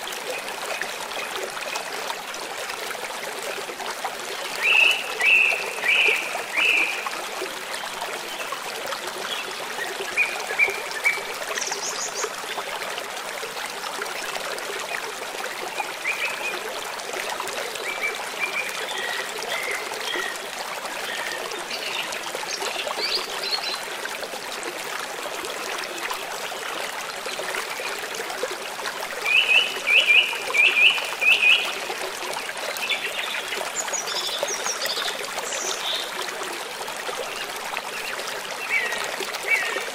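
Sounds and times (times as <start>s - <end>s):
stream running: 0.0s - 39.9s.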